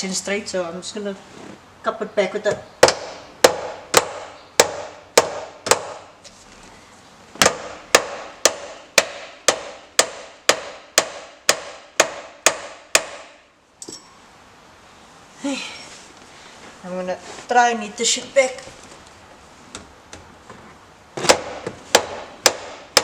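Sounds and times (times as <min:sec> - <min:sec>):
hammer striking metal: 0:07.4 - 0:14.1.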